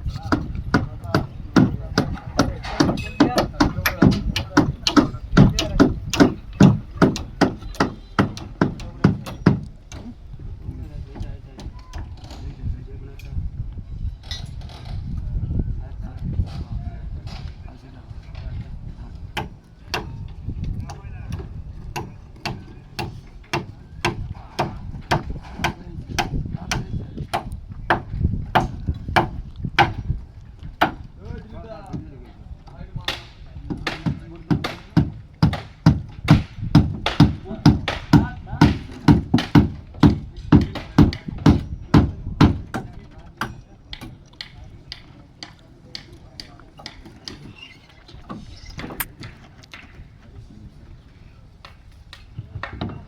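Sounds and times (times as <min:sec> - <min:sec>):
hand tools striking: 0:00.1 - 0:10.0, 0:20.9 - 0:30.1.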